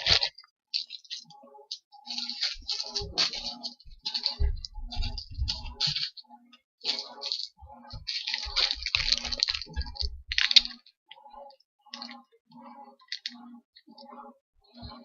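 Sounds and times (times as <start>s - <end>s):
plastic items crinkling and clicking: 0.0s - 12.3s, 13.0s - 14.1s.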